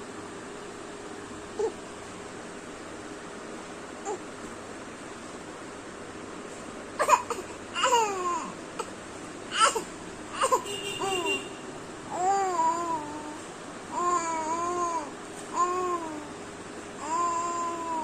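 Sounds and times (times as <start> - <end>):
baby babbling: 1.6 - 1.8, 4.0 - 4.3, 7.0 - 8.9, 9.5 - 11.3, 12.1 - 16.4, 17.0 - 18.0.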